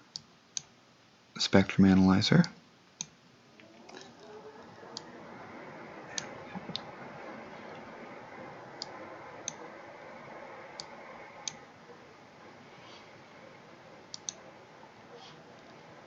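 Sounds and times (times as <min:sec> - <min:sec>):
steady low hiss: 0:00.0 - 0:16.0
computer mouse clicking: 0:03.0 - 0:07.1, 0:07.7 - 0:11.7, 0:13.1 - 0:16.0.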